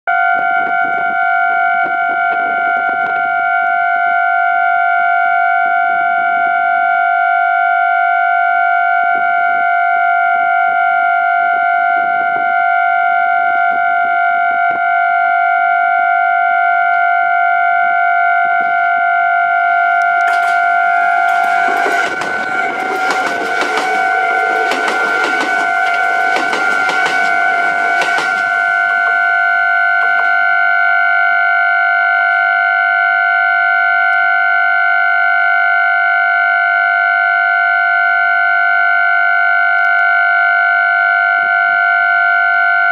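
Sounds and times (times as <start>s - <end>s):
level crossing alarm steady tone: 0.1s - 42.9s
train wheels clattering on track: 20.2s - 30.3s.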